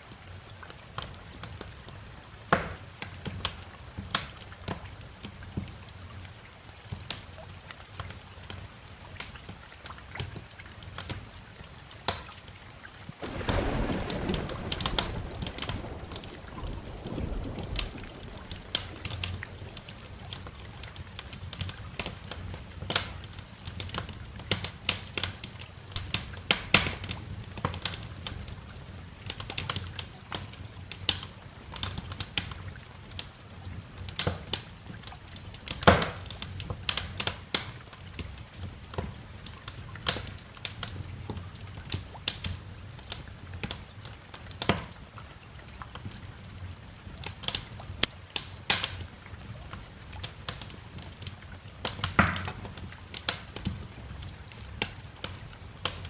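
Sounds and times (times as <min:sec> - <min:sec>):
wood fire crackling: 0:00.9 - 0:33.3, 0:34.0 - 0:56.0
low steady rumble: 0:13.3 - 0:21.2.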